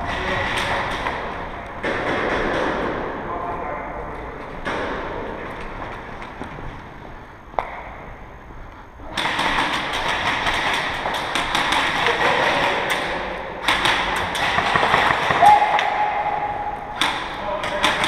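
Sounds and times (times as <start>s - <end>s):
airsoft guns firing: 0.0s - 3.2s, 9.0s - 18.0s
pellets striking hard surfaces: 9.1s - 16.3s.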